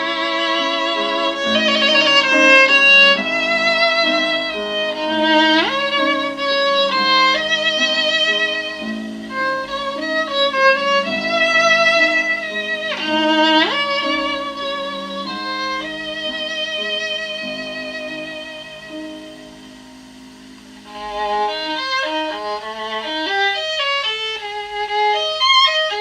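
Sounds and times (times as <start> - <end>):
violin music with vibrato: 0.0 - 26.0.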